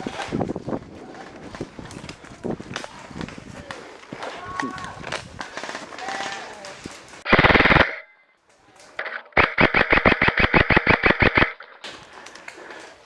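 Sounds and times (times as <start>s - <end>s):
airsoft gun firing full auto: 7.3s - 8.0s, 9.3s - 11.6s.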